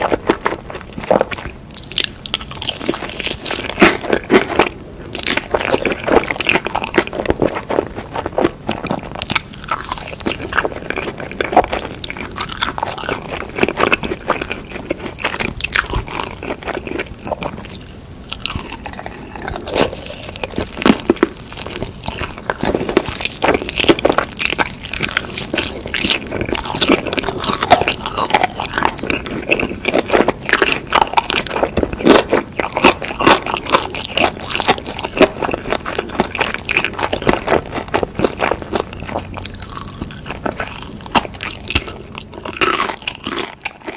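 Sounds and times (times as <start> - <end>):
crunchy bites and chewing: 0.0 - 43.9.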